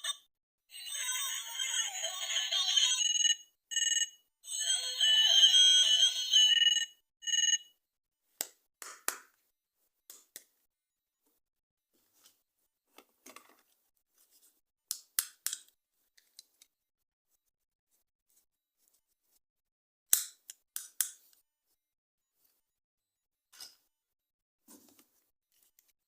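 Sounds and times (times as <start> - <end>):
toy ringing tone: 0.0 - 7.7.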